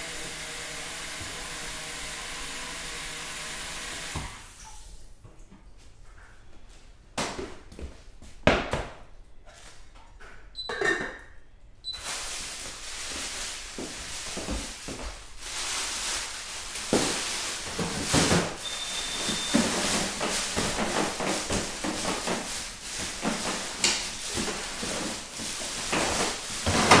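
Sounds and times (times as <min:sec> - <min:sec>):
kitchen knocks and clatter: 0:19.2 - 0:27.0.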